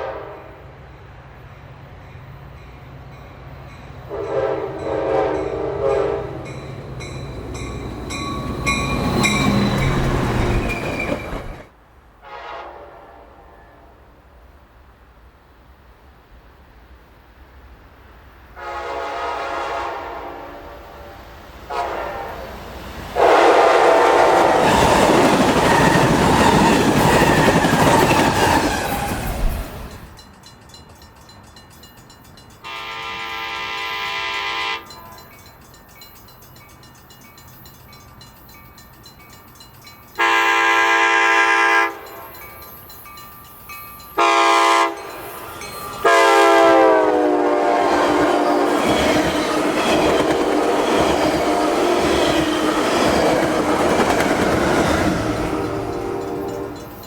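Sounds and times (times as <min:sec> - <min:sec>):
locomotive air horn blasts: 0:00.0 - 0:00.6, 0:04.1 - 0:06.4, 0:12.2 - 0:13.9, 0:18.6 - 0:22.5, 0:23.2 - 0:24.7, 0:32.6 - 0:35.3, 0:40.2 - 0:42.3, 0:44.2 - 0:49.0, 0:50.1 - 0:52.4, 0:55.4 - 0:56.9
train passing rumble: 0:00.0 - 0:57.0.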